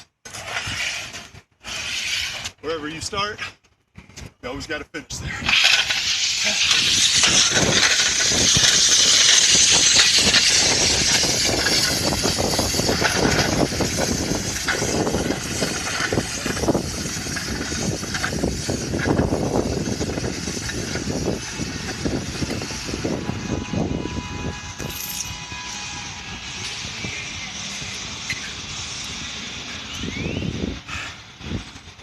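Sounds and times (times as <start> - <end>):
sled scraping over pavement: 0.0 - 4.2, 5.4 - 32.0
bright hiss: 5.6 - 13.2.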